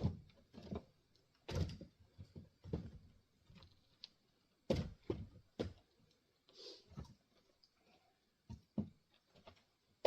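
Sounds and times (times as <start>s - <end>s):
firewood knocking dully: 0.0s - 6.3s, 8.3s - 10.0s.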